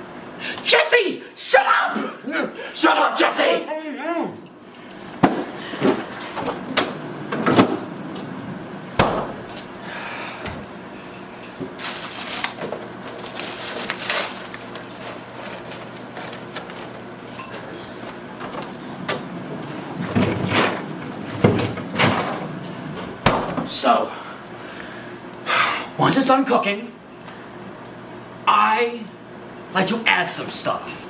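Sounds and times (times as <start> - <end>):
kitchen knocks and bangs: 9.0 - 9.5, 23.2 - 23.7.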